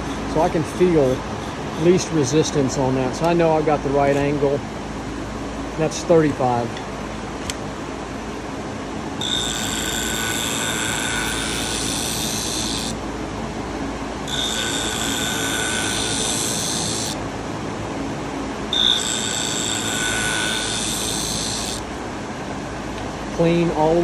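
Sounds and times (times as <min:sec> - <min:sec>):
blade grinding with ringing whine: 0:00.0 - 0:04.6, 0:09.2 - 0:13.1, 0:14.1 - 0:17.2, 0:18.6 - 0:21.9
machine running noise: 0:00.0 - 0:24.0.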